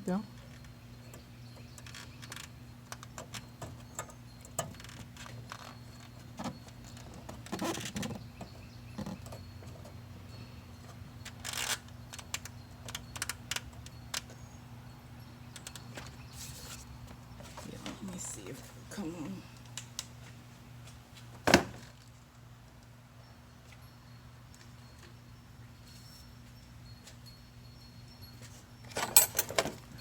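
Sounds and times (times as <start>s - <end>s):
small clicks and rattles: 0.4s - 10.0s, 10.8s - 14.5s
scraping rustle: 15.8s - 18.8s.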